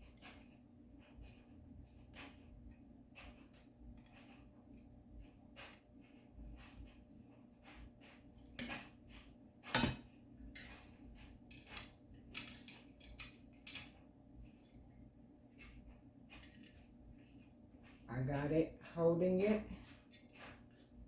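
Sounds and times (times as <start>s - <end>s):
wrench clinking on metal: 8.6s - 8.9s, 11.5s - 14.0s.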